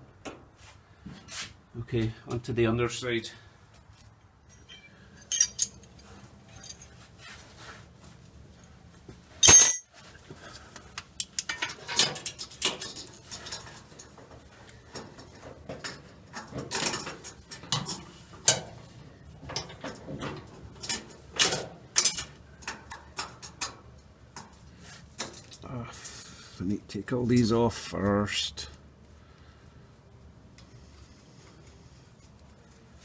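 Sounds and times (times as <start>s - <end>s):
metal tools clinking and knocking: 4.5s - 6.9s, 9.4s - 10.2s
loud metallic clang: 9.4s - 9.8s.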